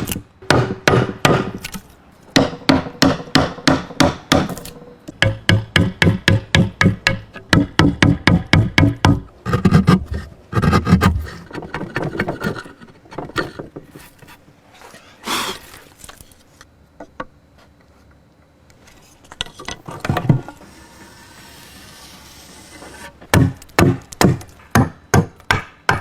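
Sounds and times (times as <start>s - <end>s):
hand tools striking wood: 0.0s - 10.0s, 23.3s - 26.0s.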